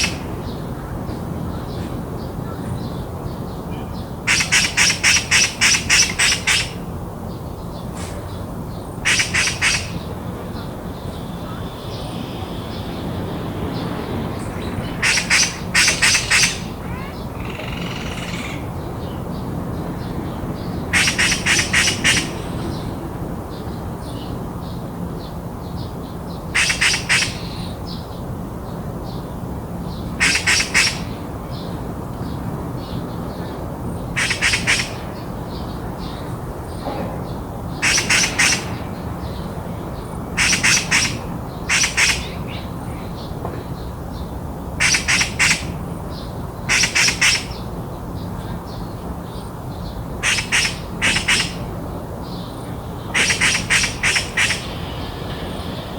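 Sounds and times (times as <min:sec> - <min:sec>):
magpie chattering: 0:04.3 - 0:06.8, 0:09.0 - 0:10.1, 0:14.6 - 0:18.7, 0:20.9 - 0:22.7, 0:26.6 - 0:27.6, 0:30.2 - 0:31.2, 0:34.2 - 0:35.0, 0:37.8 - 0:39.3, 0:40.3 - 0:43.1, 0:44.8 - 0:45.8, 0:46.7 - 0:47.7, 0:50.1 - 0:51.8, 0:53.0 - 0:55.9.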